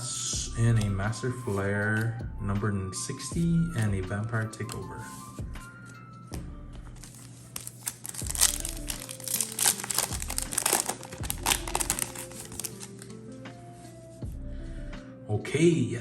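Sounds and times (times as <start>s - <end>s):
background music with bass line: 6.3s - 7.0s, 9.9s - 12.7s, 14.2s - 15.1s
plastic wrapper crinkling and tearing: 7.0s - 13.1s.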